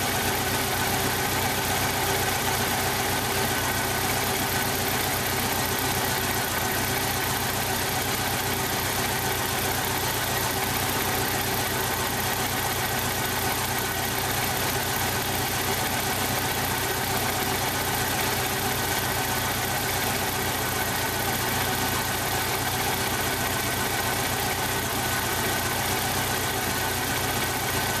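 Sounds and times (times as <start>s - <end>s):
car engine idling rough: 0.0s - 28.0s.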